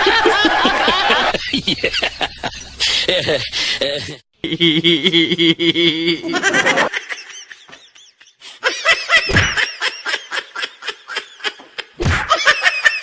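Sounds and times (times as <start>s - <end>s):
high-pitched laughs: 0.0s - 13.0s.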